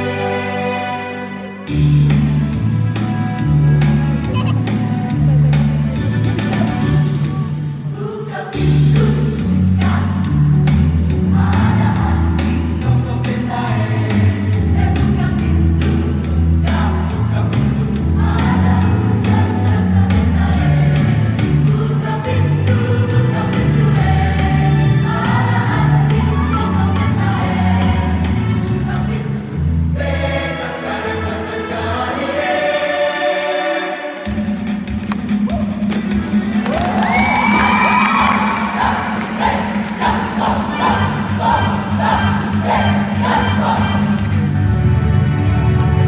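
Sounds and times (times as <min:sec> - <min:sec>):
mixed choir singing: 0:00.0 - 0:01.8, 0:07.0 - 0:34.5, 0:37.9 - 0:44.6
instrumental accompaniment with beat: 0:34.1 - 0:44.6.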